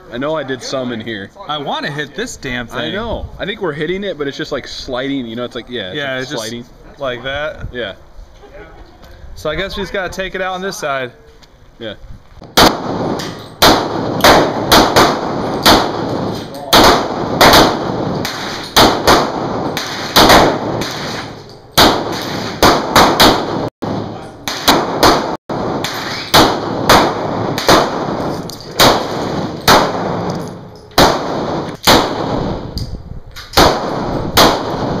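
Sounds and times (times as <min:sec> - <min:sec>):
handgun shots with echo: 0:12.5 - 0:35.0.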